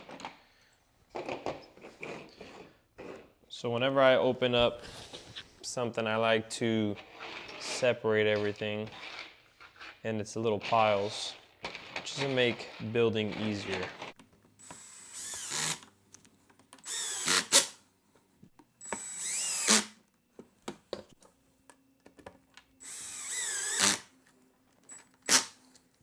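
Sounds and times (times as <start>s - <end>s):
power drill driving screws: 14.6s - 15.8s, 16.8s - 17.8s, 18.8s - 20.0s, 22.8s - 24.1s, 24.9s - 25.6s.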